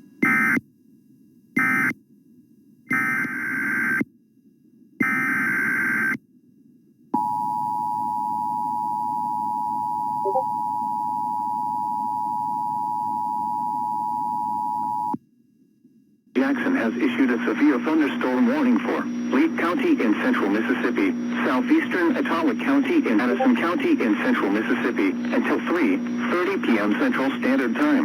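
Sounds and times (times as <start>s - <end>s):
two-tone attention signal: 10.2s - 10.5s, 23.3s - 23.6s.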